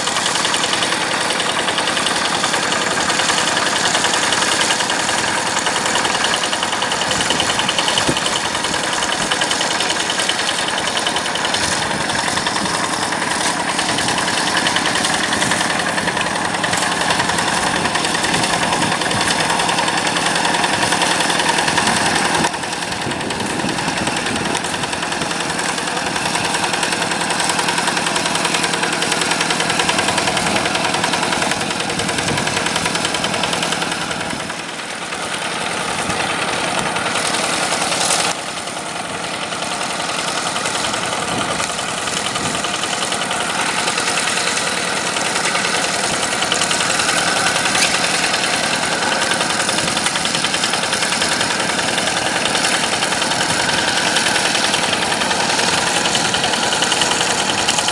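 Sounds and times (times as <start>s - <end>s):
tractor diesel engine knocking: 0.0s - 57.9s.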